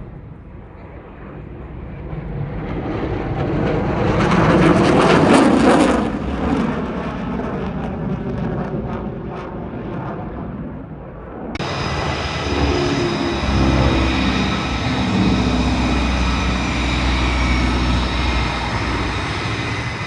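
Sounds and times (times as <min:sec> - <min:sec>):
aircraft engine flying past: 0:11.6 - 0:20.0.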